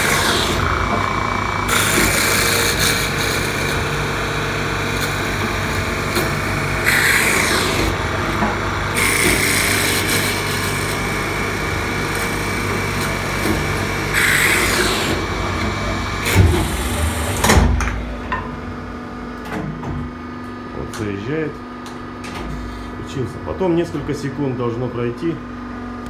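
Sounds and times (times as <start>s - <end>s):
loud machine cutting noise: 0.0s - 19.4s
motor humming: 0.0s - 21.2s.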